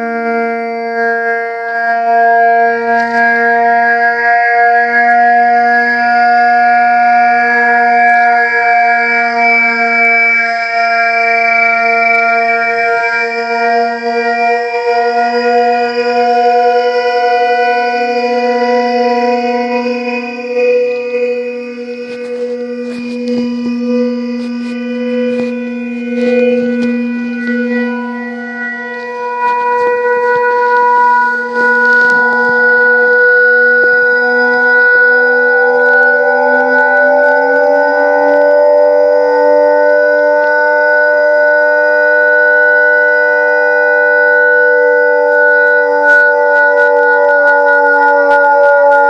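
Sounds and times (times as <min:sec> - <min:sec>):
droning hum with overtones: 0:00.0 - 0:49.0
sharp clicks and crackles: 0:21.9 - 0:34.1, 0:45.6 - 0:49.0.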